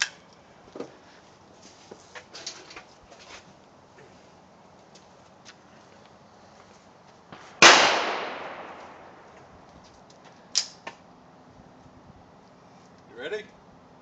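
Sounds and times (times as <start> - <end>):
handgun shot: 7.6 - 9.0.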